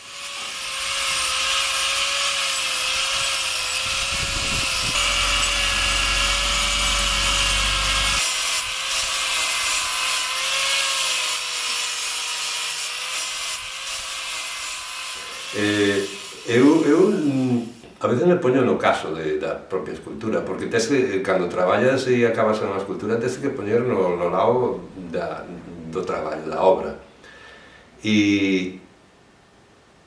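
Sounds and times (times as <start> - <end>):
chainsaw cutting wood: 0.0 - 17.9.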